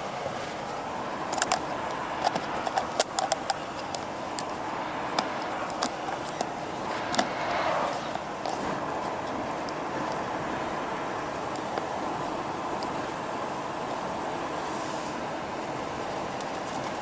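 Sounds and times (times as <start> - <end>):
road and engine noise in cab: 0.0 - 17.0
sharp clicks and rattles: 1.2 - 7.4.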